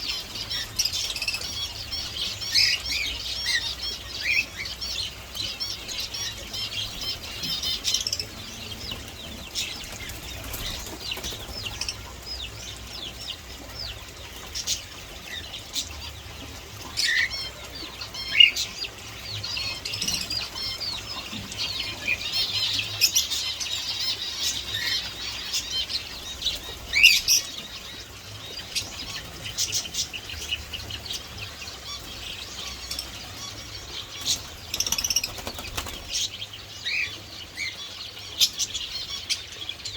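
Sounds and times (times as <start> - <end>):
small birds chirping: 0.0 - 39.9
sharp bird calls: 16.9 - 39.9.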